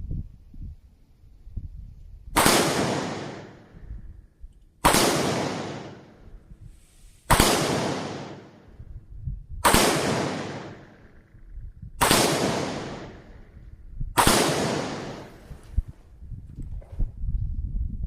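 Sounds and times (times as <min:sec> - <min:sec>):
handgun shots: 0:02.4 - 0:03.6, 0:04.8 - 0:06.2, 0:07.3 - 0:08.6, 0:09.6 - 0:11.0, 0:12.0 - 0:13.3, 0:14.2 - 0:15.5.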